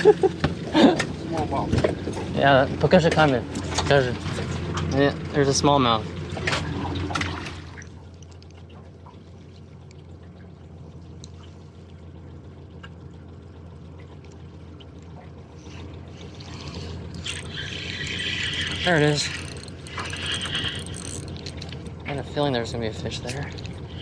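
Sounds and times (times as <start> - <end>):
low hum: 0.0 - 24.0
water trickling and splashing: 0.0 - 24.0
fishing reel clicking: 17.2 - 21.6.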